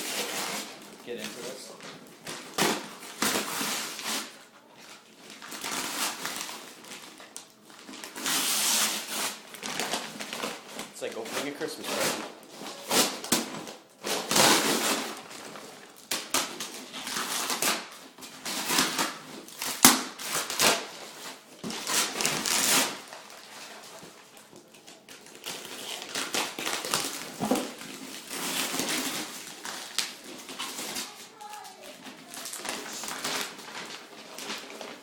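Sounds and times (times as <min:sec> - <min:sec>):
paper tearing and crumpling: 0:07.9 - 0:15.2, 0:16.0 - 0:24.0, 0:25.2 - 0:35.0.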